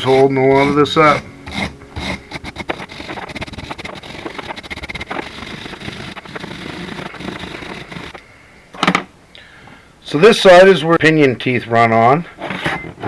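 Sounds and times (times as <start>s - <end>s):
wire brush scrubbing metal: 0.0s - 8.2s.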